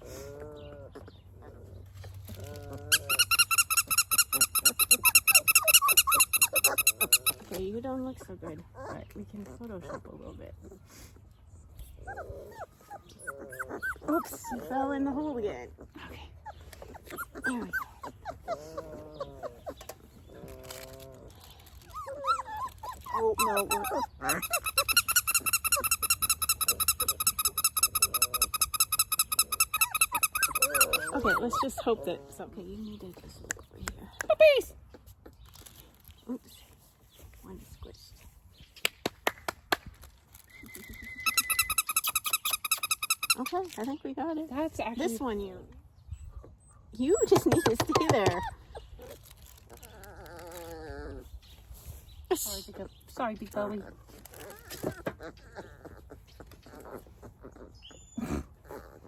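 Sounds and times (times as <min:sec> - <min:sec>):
puppy whimpering: 0:00.0 - 0:11.0, 0:11.7 - 0:35.4, 0:40.6 - 0:43.8, 0:44.5 - 0:51.6, 0:52.5 - 0:59.0
rapid high squeaks: 0:02.8 - 0:07.5, 0:21.8 - 0:31.7, 0:40.4 - 0:43.9.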